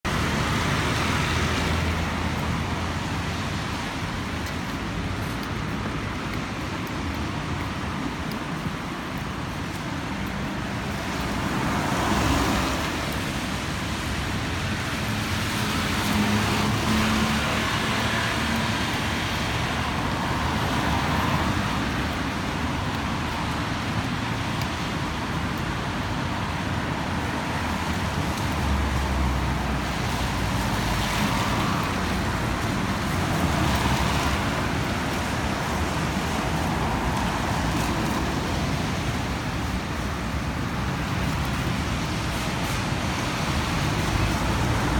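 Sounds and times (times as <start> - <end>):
low traffic rumble: 0.0 - 44.9
vehicles passing: 0.1 - 44.9.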